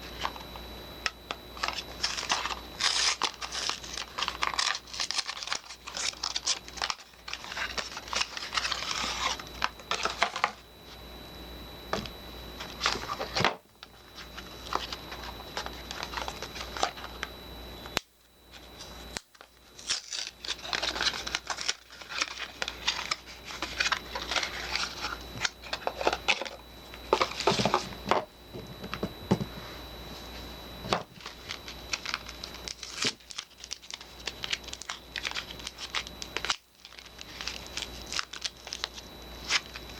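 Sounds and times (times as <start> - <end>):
wrapper crinkling and tearing: 1.6 - 10.5, 19.1 - 27.8, 31.2 - 39.9.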